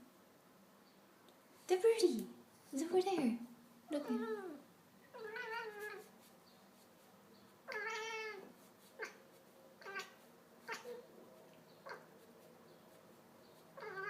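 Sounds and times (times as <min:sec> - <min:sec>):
cat chirping: 0:04.0 - 0:06.1, 0:07.6 - 0:11.1, 0:11.8 - 0:12.2, 0:13.6 - 0:14.0
cat meowing: 0:04.0 - 0:06.1, 0:07.7 - 0:09.2, 0:09.8 - 0:11.1, 0:11.8 - 0:12.1, 0:13.8 - 0:14.0.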